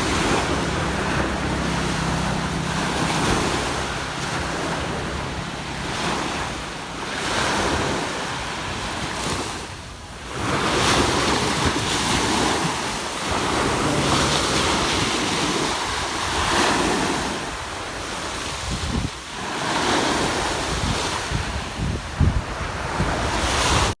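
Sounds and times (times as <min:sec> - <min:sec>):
waves washing onto beach: 0:00.0 - 0:24.0
wind buffeting microphone: 0:00.0 - 0:24.0.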